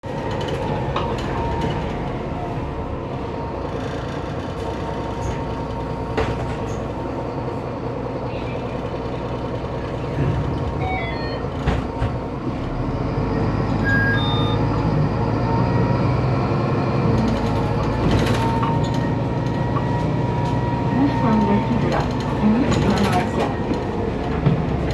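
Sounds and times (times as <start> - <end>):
diesel bus engine running: 0.0 - 24.9.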